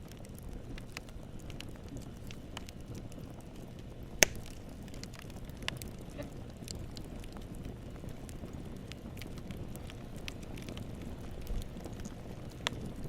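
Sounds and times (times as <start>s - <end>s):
rumble of flames: 0.0s - 13.0s
wood fire crackling: 0.0s - 13.0s
loud sharp pop of wood: 4.2s - 4.5s.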